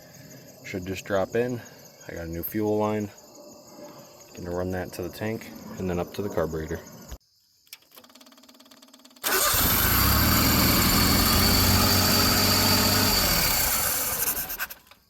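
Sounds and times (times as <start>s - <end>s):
engine starting and running: 8.0s - 15.0s.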